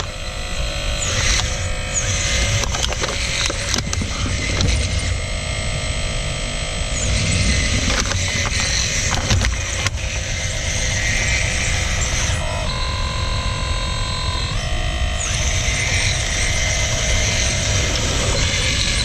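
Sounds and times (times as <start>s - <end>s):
electric motors whining: 0.0s - 19.0s
sharp clicks and knocks: 1.0s - 5.1s, 7.0s - 12.2s.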